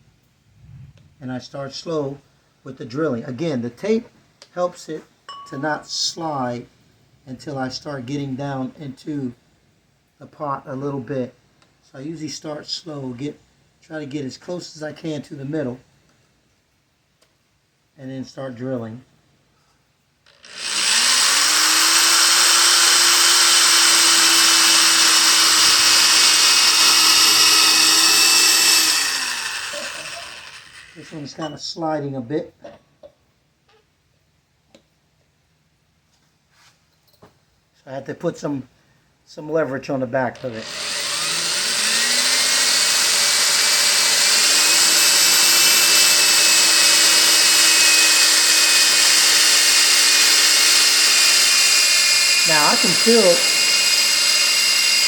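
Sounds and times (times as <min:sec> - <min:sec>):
electric drill boring into ceramic: 0:20.3 - 0:31.2, 0:40.4 - 0:55.0.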